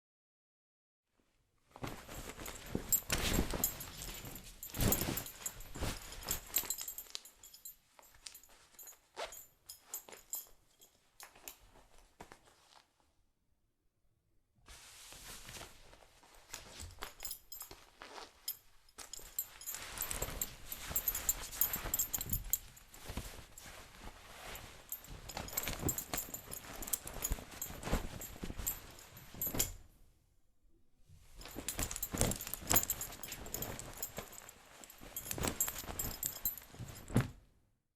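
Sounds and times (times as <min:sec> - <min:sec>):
cloth rustling: 0:01.6 - 0:13.0, 0:14.7 - 0:29.9, 0:31.2 - 0:37.5
metal belt buckle jingling: 0:02.0 - 0:11.6, 0:16.6 - 0:23.7, 0:24.4 - 0:29.8, 0:31.4 - 0:37.3.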